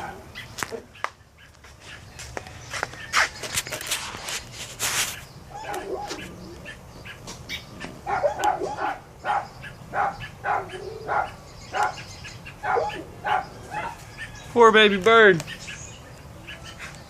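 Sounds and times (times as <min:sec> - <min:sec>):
dog barking: 0:00.0 - 0:00.9, 0:05.5 - 0:06.2, 0:08.0 - 0:12.0, 0:12.6 - 0:14.1.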